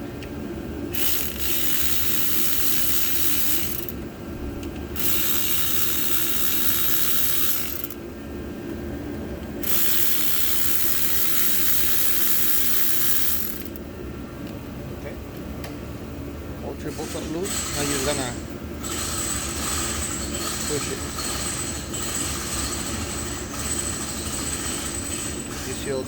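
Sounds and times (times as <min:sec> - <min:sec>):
ratchet wrench clicking: 0:01.0 - 0:04.0, 0:05.0 - 0:08.0, 0:09.6 - 0:13.8.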